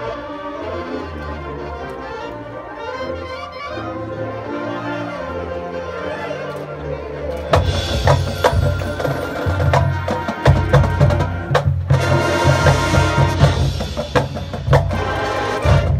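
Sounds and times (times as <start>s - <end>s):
brass chords: 0.0s - 15.9s
drum and wood-block hits: 7.6s - 15.2s.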